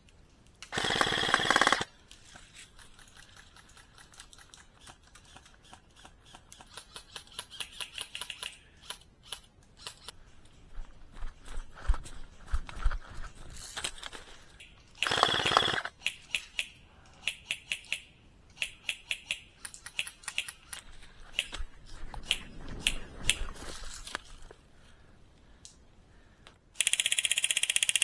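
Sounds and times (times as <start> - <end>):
airsoft guns firing: 0.7 - 1.9, 15.0 - 16.4.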